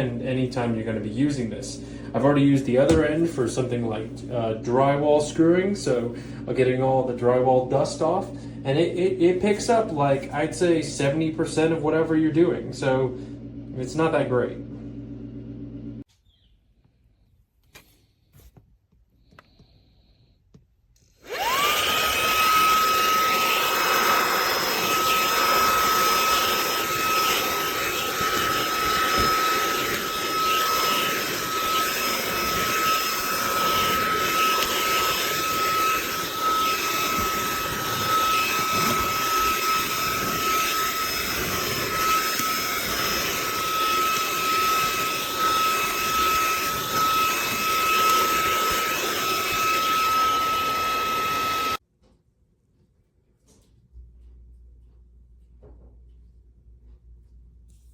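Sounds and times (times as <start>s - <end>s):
handheld vacuum motor whining: 2.1s - 12.1s, 21.0s - 51.8s.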